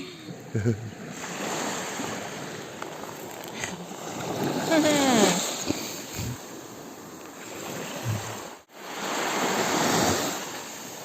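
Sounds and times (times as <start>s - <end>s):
sea water splashing: 0.4s - 11.0s.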